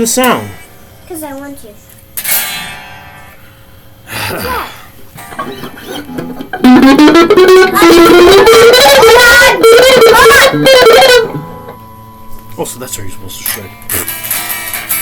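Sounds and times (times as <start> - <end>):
distorted electric guitar lead: 5.2 - 15.0.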